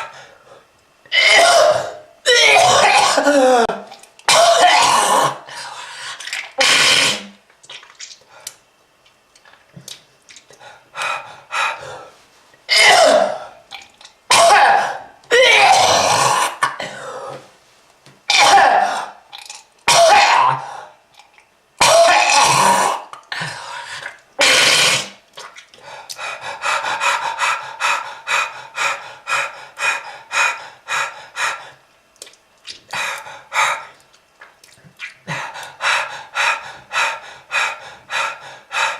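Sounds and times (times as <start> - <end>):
person coughing hard: 1.1 - 5.4, 12.7 - 13.4, 14.3 - 17.2, 18.3 - 19.2, 19.9 - 20.7, 21.8 - 23.0
throat-clearing: 1.1 - 5.4, 12.7 - 13.5.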